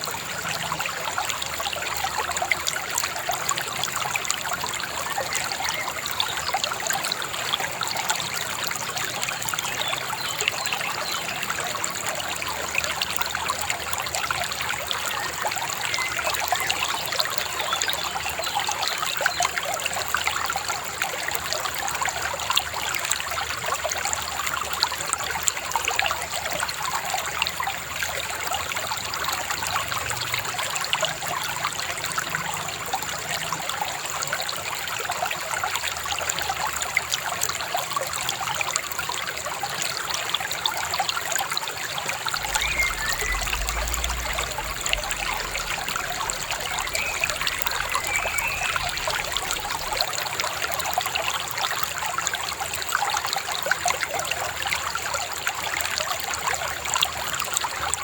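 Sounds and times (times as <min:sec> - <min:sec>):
shallow river babbling: 0:42.2 - 0:52.9.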